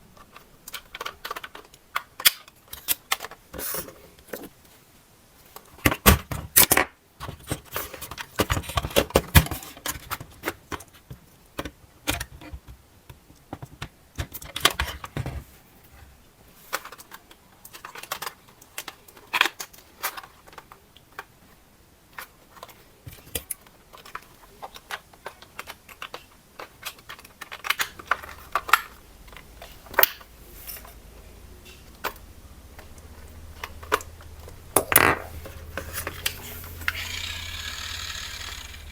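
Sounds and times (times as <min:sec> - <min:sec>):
hard plastic clicking and rattling: 0:00.2 - 0:04.6, 0:22.1 - 0:31.0, 0:31.6 - 0:38.9
faint low hum: 0:27.2 - 0:38.9.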